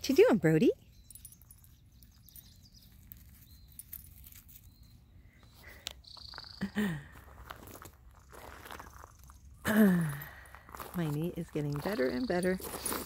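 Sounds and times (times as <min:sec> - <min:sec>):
high bird chirp: 0:00.8 - 0:06.8, 0:11.7 - 0:13.0.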